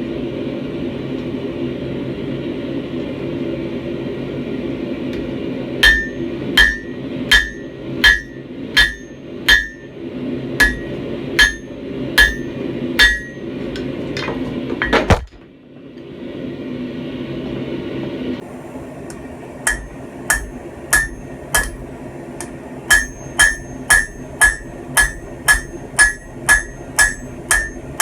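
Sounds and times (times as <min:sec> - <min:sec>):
hammer striking steel on anvil: 0:05.2 - 0:10.0, 0:10.6 - 0:15.2, 0:19.1 - 0:28.0.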